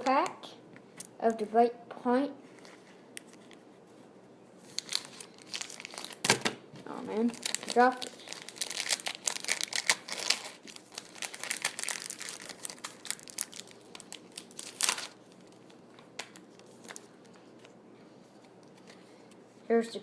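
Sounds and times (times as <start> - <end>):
foil wrapper crinkling and tearing: 4.7 - 6.3, 6.9 - 17.4.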